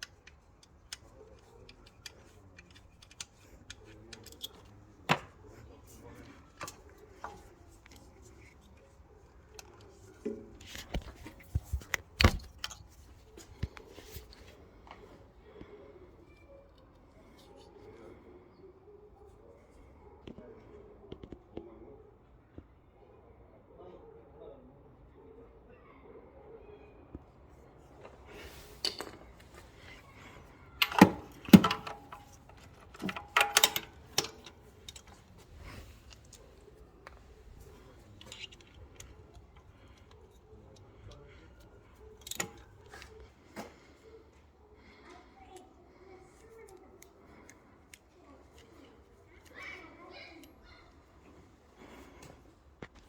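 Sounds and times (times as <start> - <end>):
hard objects clicking and knocking: 28.8 - 35.3
clinks: 29.9 - 35.2.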